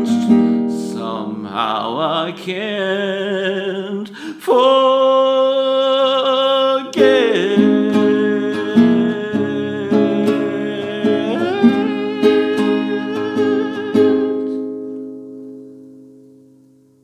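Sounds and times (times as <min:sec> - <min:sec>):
acoustic guitar strumming: 0:00.0 - 0:03.8, 0:04.6 - 0:17.0
man singing: 0:00.0 - 0:14.8.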